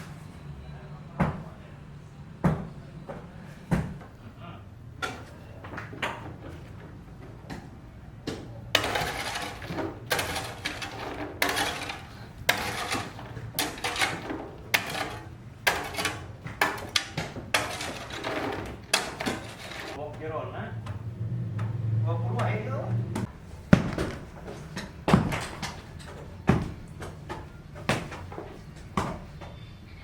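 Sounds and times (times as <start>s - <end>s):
hard objects clattering and scraping: 8.3s - 20.0s.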